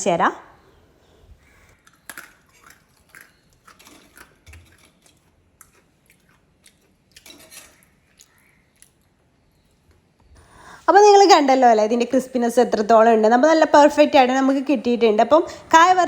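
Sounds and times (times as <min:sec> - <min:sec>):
crunching crisp chips: 0:01.7 - 0:09.1.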